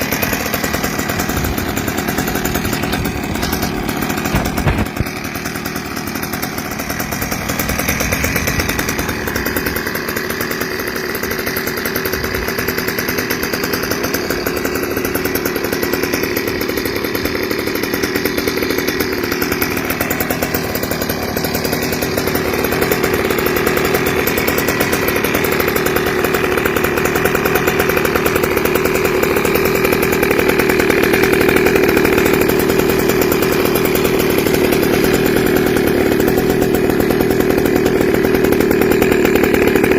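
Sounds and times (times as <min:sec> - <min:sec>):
scooter two-stroke engine buzzing: 0:00.0 - 0:39.9.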